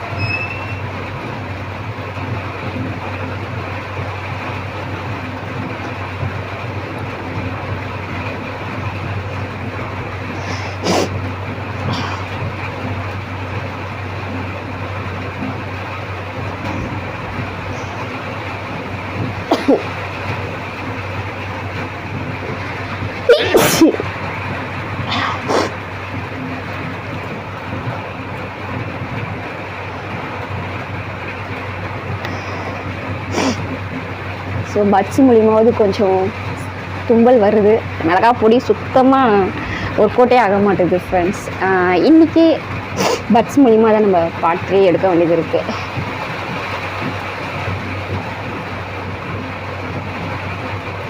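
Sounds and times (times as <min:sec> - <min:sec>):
low hum: 0:00.0 - 0:51.0
steady rain falling: 0:00.0 - 0:51.0
steady rushing background noise: 0:00.0 - 0:51.0
person sneezing: 0:23.3 - 0:24.0.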